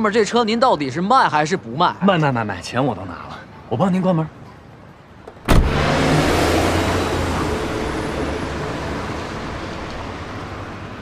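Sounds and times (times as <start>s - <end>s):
car door slamming: 5.3s - 6.3s
car engine pulling away: 5.4s - 10.9s.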